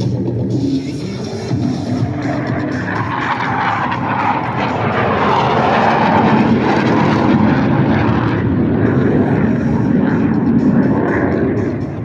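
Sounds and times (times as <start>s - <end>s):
jet noise rushing: 0.0s - 12.0s.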